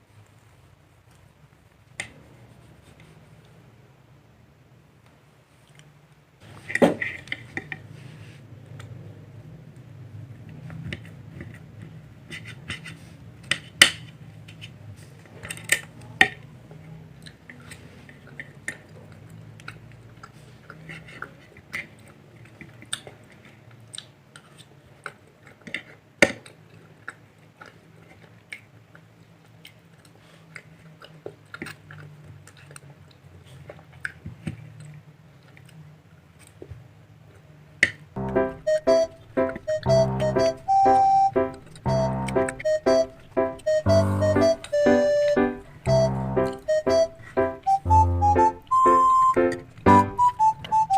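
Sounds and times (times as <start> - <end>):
chewing: 17.1 - 36.7.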